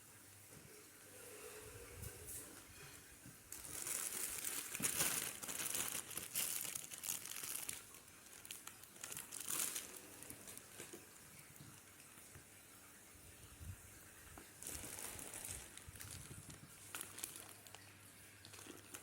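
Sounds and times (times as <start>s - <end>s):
plastic bags crinkling: 3.4s - 12.1s, 14.3s - 19.0s.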